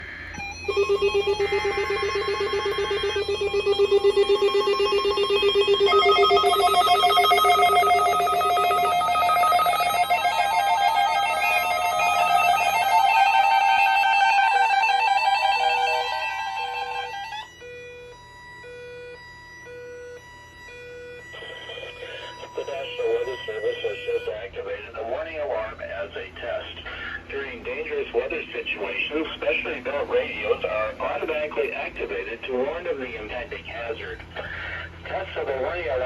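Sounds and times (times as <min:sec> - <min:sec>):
weather alert radio alarm tones: 0:00.2 - 0:17.4, 0:21.3 - 0:24.6.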